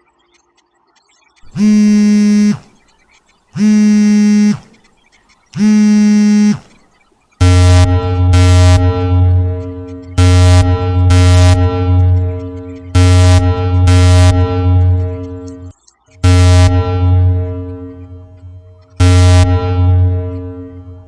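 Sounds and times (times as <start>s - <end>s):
electronic buzzer tones: 1.5s - 2.7s, 3.6s - 4.8s, 5.6s - 6.7s, 7.4s - 21.0s
lower electronic tone: 1.5s - 2.7s, 3.6s - 4.7s, 5.6s - 6.7s, 7.4s - 21.0s.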